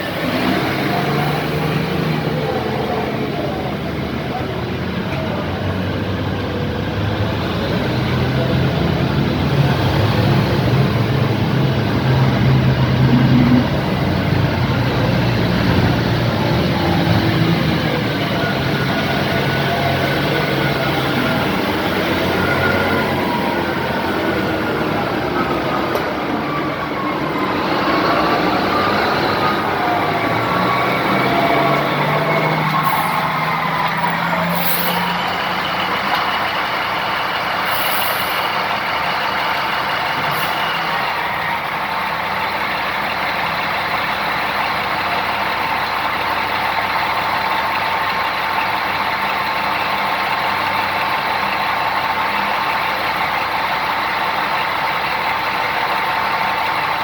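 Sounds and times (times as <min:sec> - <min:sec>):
haul truck engines running: 0:00.0 - 0:57.0
air brake hisses: 0:32.5 - 0:33.6, 0:34.2 - 0:35.6, 0:37.6 - 0:38.6, 0:40.2 - 0:40.9.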